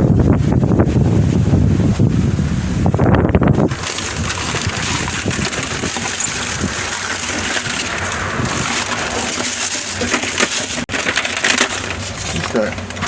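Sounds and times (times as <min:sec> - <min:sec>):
ice cubes clattering: 0:03.7 - 0:13.0.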